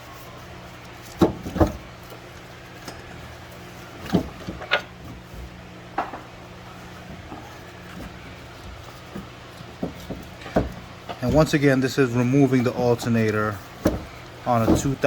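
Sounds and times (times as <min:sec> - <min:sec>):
steady low hum: 0:00.0 - 0:15.0
tools knocking and clunking: 0:05.9 - 0:06.3, 0:07.0 - 0:11.7, 0:13.0 - 0:15.0.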